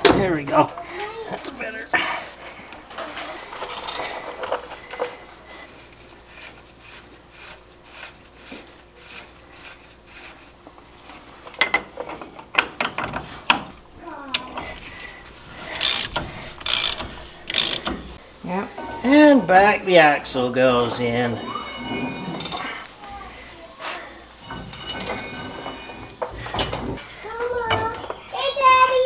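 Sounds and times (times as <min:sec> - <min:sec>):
metal parts knocking and scraping: 0:15.4 - 0:18.1
ratchet wrench clicking: 0:15.7 - 0:17.9.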